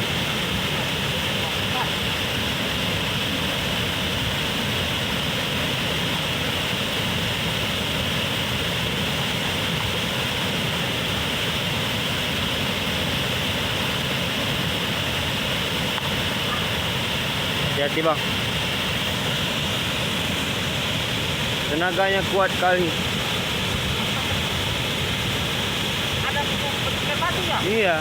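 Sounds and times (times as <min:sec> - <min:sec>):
waterfall roaring: 0:00.0 - 0:28.0.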